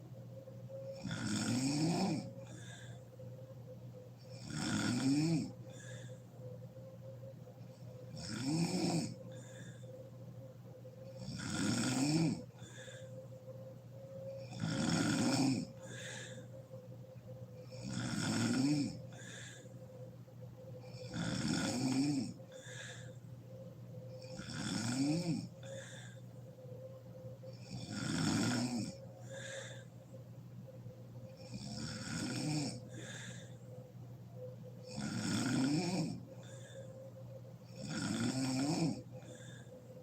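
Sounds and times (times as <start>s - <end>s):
woman snoring: 0.7s - 3.0s, 4.2s - 6.2s, 7.7s - 10.0s, 11.0s - 13.4s, 14.2s - 16.8s, 17.6s - 19.8s, 20.8s - 23.2s, 24.1s - 26.3s, 27.5s - 29.9s, 31.3s - 33.7s, 34.8s - 37.0s, 37.6s - 39.8s.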